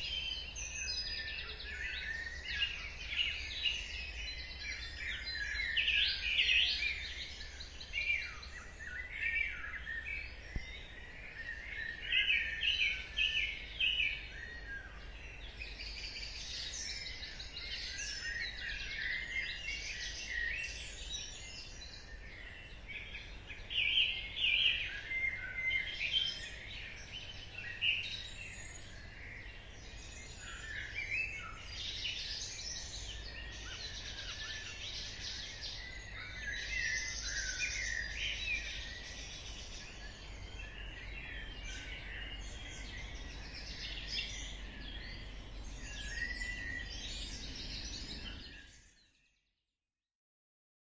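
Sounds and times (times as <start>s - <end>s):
birds singing: 0.0s - 49.5s.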